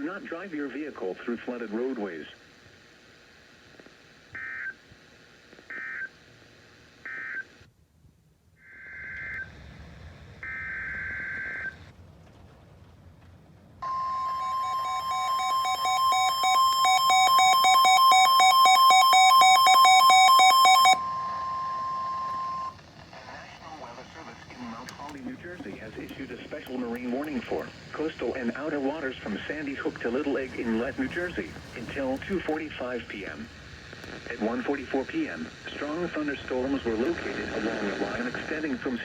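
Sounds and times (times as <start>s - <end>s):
alert radio alarm beeping: 10.4s - 11.8s, 13.8s - 23.3s
steady warning alarm tone: 10.4s - 11.9s, 13.8s - 33.4s
buzzy data bursts: 13.8s - 39.0s.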